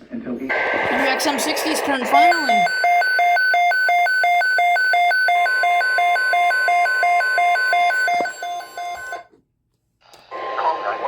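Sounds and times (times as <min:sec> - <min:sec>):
steady warning tone: 0:00.5 - 0:09.3.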